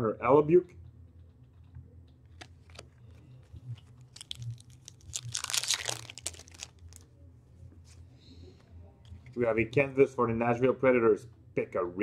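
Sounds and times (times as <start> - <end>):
wrapper crinkling and tearing: 3.7 - 7.1.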